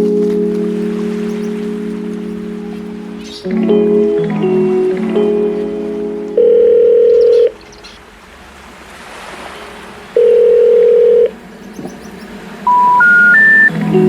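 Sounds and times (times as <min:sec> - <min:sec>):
telephone ringback tone: 0:06.4 - 0:07.5, 0:10.2 - 0:11.3, 0:12.7 - 0:13.7.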